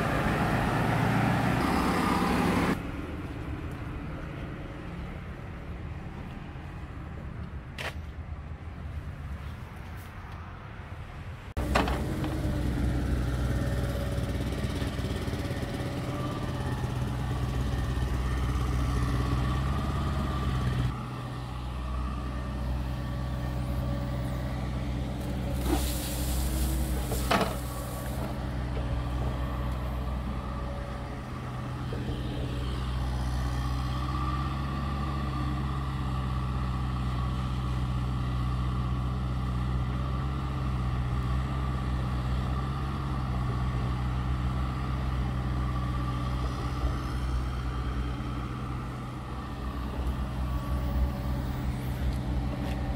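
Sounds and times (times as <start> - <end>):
heavy machine engine running: 11.6 - 37.0
air release hiss: 25.6 - 28.4.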